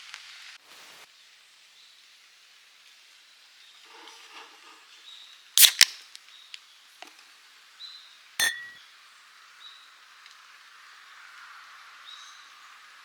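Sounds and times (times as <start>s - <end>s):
loud metallic clink: 8.4s - 8.8s.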